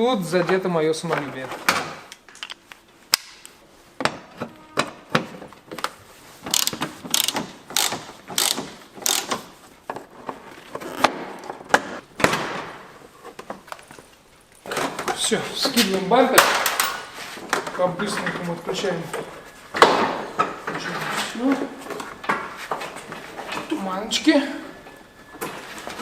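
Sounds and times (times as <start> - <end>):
hand tools clicking and rattling: 6.4 - 9.5, 13.6 - 17.2.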